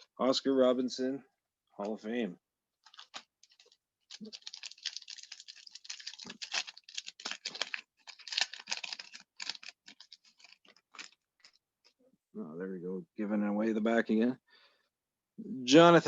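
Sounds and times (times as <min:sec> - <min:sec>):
pack wrapper crinkling: 0:02.8 - 0:12.0.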